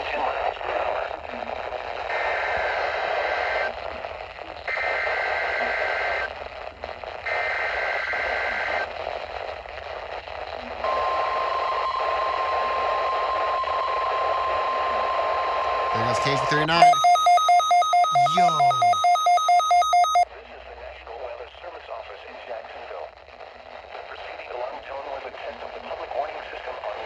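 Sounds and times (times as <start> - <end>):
radio hiss: 0.0 - 13.5, 15.9 - 17.2, 18.1 - 20.2, 21.1 - 27.0
steady single-pitch alert tone: 16.0 - 20.2
warbling two-tone data bursts: 16.0 - 20.2.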